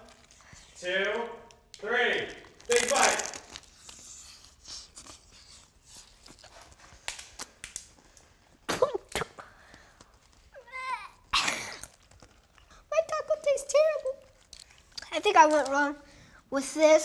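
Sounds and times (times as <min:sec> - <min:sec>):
people chewing with crunches: 0:01.4 - 0:12.9, 0:14.1 - 0:15.2
lip smacks: 0:14.4 - 0:15.1.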